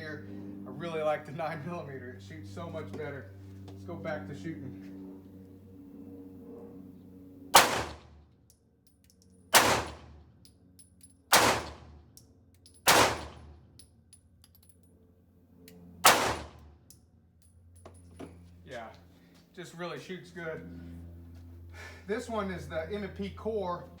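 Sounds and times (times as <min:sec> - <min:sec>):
handgun shots: 0:07.6 - 0:08.2, 0:09.5 - 0:10.2, 0:11.3 - 0:12.0, 0:12.9 - 0:13.6, 0:16.0 - 0:16.7.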